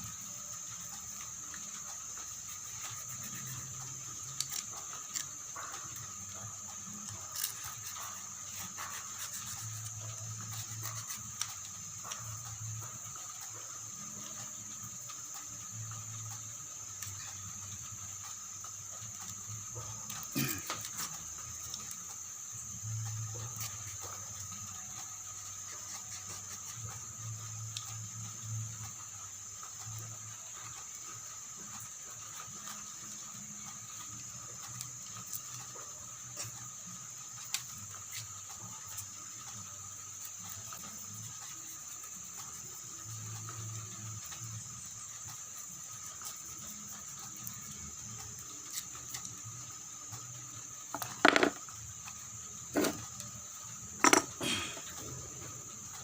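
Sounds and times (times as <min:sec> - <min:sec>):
taps and scrapes carving coconut shell: 0:01.3 - 0:15.1, 0:19.1 - 0:22.1, 0:50.9 - 0:51.7, 0:52.7 - 0:53.3, 0:54.0 - 0:55.0.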